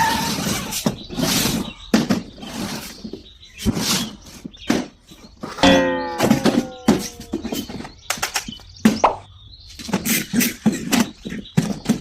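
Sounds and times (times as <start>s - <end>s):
toy car scraping and knocking: 0.0s - 5.6s, 9.8s - 12.0s.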